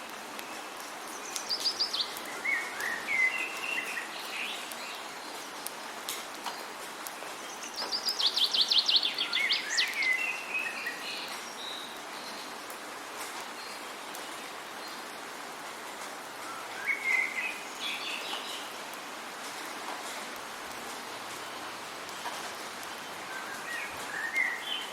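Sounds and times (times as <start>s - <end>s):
songbird singing: 0.0s - 5.4s, 6.5s - 12.6s, 16.4s - 18.9s, 20.8s - 24.9s.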